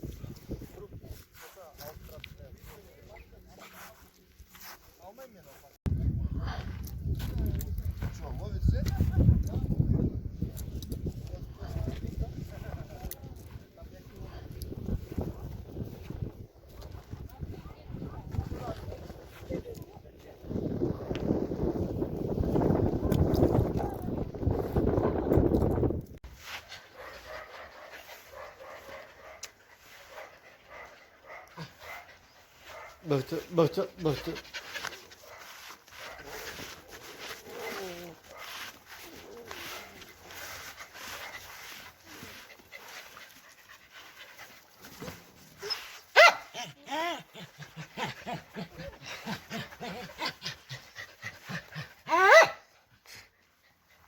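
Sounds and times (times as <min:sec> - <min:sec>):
dog panting: 0:26.6 - 0:45.2, 0:47.0 - 0:52.1.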